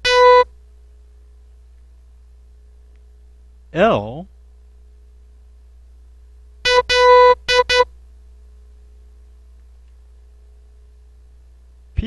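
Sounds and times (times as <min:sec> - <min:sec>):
morse code beeps: 0:00.0 - 0:00.5, 0:06.7 - 0:07.9
faint steady hum: 0:00.0 - 0:12.0.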